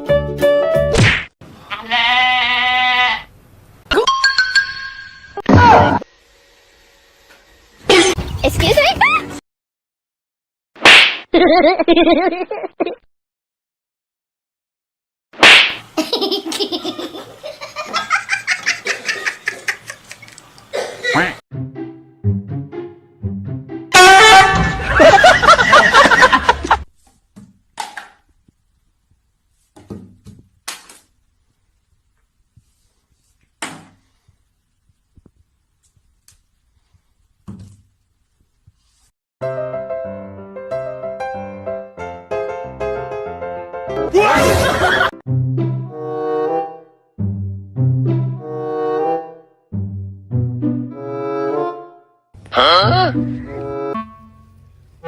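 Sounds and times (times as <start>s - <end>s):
person laughing hard: 11.3s - 13.0s, 24.4s - 26.8s, 44.2s - 45.2s
piano music: 21.5s - 24.0s, 39.4s - 44.2s, 52.9s - 54.8s.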